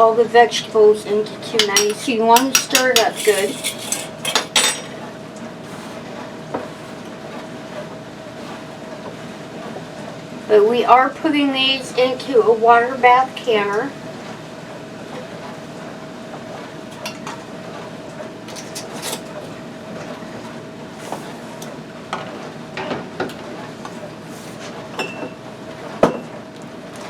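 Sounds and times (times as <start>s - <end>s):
steady hum: 0.0s - 22.1s
utensil scraping a pot: 1.6s - 4.9s, 5.6s - 7.1s, 8.3s - 8.7s.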